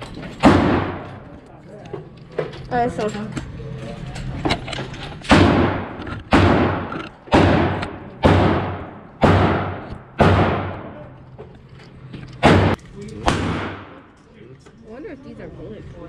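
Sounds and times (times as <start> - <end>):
pistol shots with echo: 0.4 - 1.2, 5.3 - 11.0, 12.4 - 14.1.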